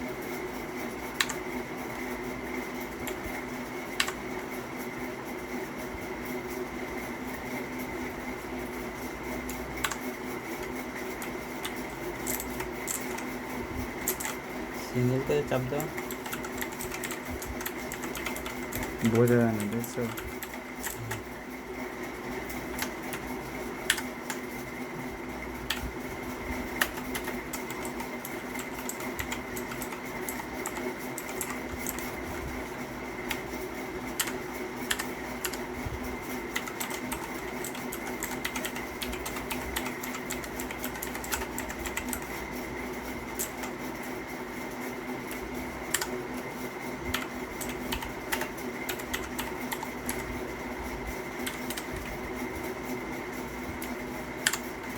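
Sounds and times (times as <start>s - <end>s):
steady background hum: 0.0s - 54.9s
mechanical keyboard keys clicking: 11.6s - 13.3s, 14.0s - 14.4s, 15.8s - 21.2s, 23.9s - 24.4s, 26.8s - 32.1s, 34.2s - 35.6s, 36.6s - 42.3s, 43.4s - 43.7s, 45.3s - 46.1s, 47.1s - 50.3s, 51.4s - 52.0s, 53.8s - 54.6s.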